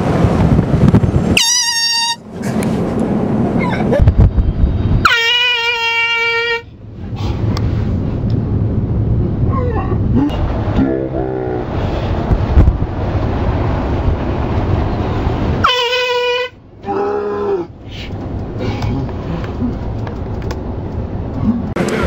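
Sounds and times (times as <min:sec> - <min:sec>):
low wind rumble: 0:00.0 - 0:22.0
air horn blasts: 0:01.4 - 0:02.3, 0:15.6 - 0:16.6.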